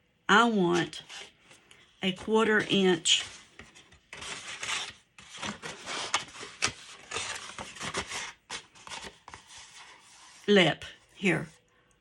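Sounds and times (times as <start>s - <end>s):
paper rubbing and sliding: 0.7s - 10.5s.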